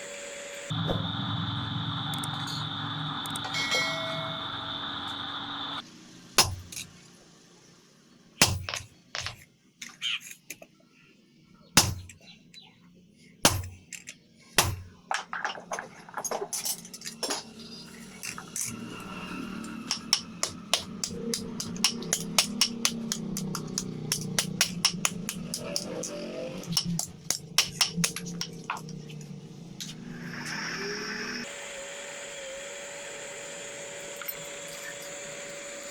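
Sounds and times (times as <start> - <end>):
hammer striking iron on anvil: 6.4 - 6.9, 8.4 - 9.4, 11.8 - 12.2, 13.5 - 13.8, 14.6 - 14.9, 19.8 - 28.8.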